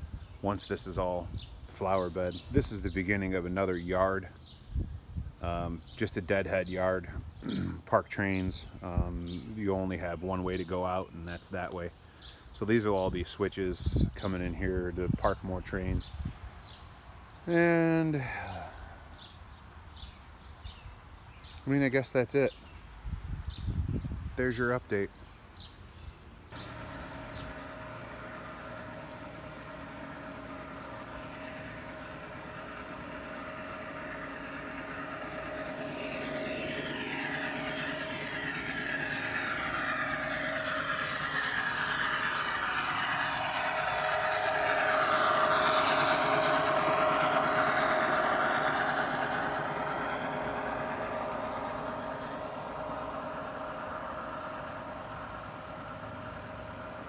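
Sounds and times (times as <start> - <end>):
model train motor whining: 0.0 - 4.2, 26.5 - 57.0.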